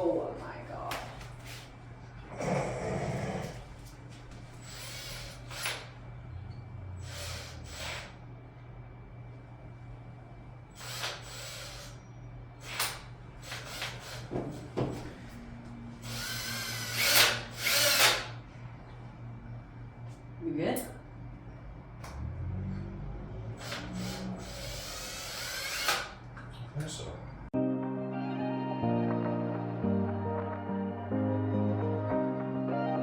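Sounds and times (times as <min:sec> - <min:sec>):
power drill drilling into wall: 0:04.6 - 0:05.9, 0:07.0 - 0:08.1, 0:10.8 - 0:11.9, 0:16.0 - 0:18.4, 0:23.6 - 0:26.2.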